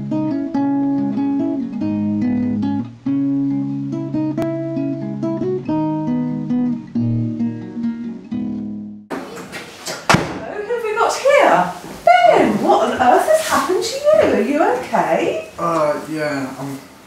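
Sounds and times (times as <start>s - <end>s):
acoustic guitar strumming: 0.0s - 9.4s.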